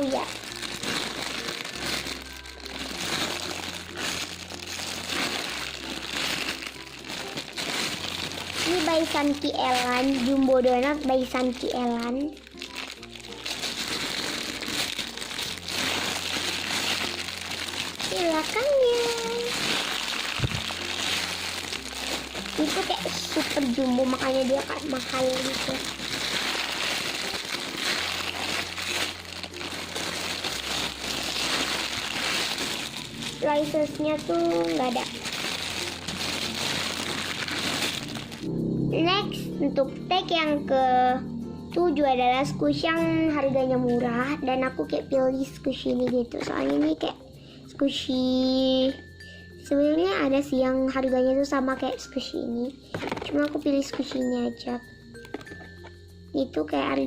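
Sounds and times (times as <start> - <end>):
squishy toy crinkling and rustling: 0.0 - 38.5, 45.9 - 47.0, 55.2 - 55.9.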